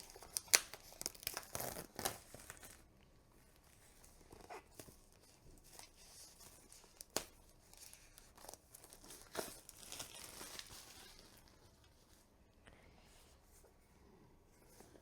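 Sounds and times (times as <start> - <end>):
plastic wrapping crinkling and tearing: 0.0 - 2.9, 4.3 - 12.1.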